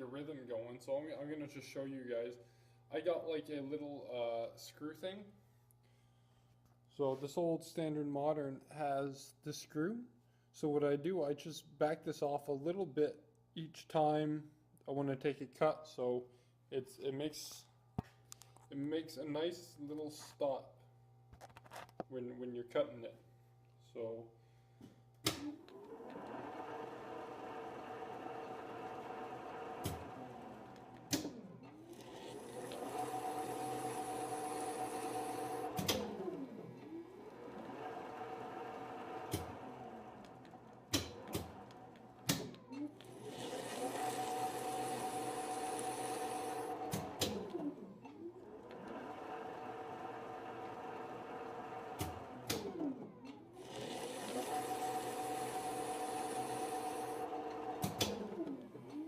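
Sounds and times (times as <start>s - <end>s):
sharp clicks of controls: 25.2s - 27.0s, 28.4s - 33.0s, 35.0s - 43.2s, 45.4s - 51.0s, 51.7s - 54.9s, 56.3s - 59.0s
lathe spindle and gears whining: 25.4s - 59.0s.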